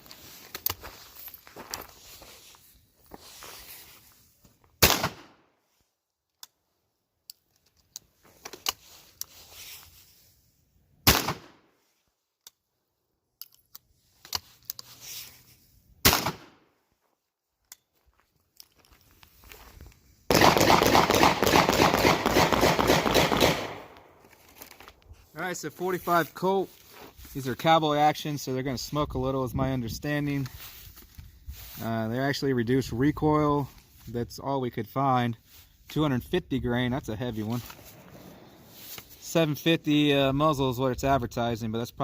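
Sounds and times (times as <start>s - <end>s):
gunshots with echo: 20.3s - 24.0s.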